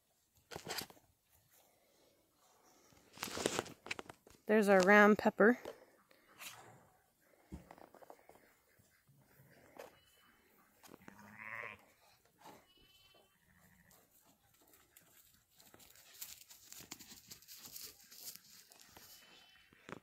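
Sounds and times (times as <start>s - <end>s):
sheep bleating: 11.0s - 11.9s, 12.7s - 14.0s
scratchy rustling: 15.7s - 19.2s.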